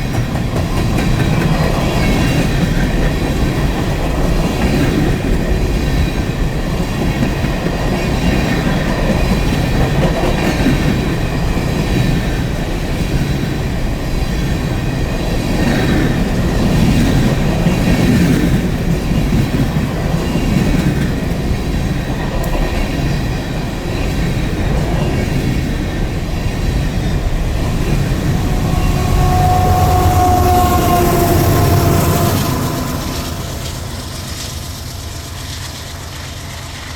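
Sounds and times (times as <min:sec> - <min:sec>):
train wheels clicking over rail joints: 0:00.0 - 0:36.9
wheel squeal: 0:27.0 - 0:36.9.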